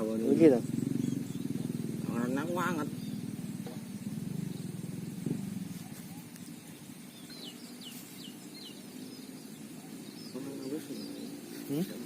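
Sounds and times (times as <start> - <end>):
bird chirping: 0.0 - 12.0
small engine humming: 0.0 - 12.0.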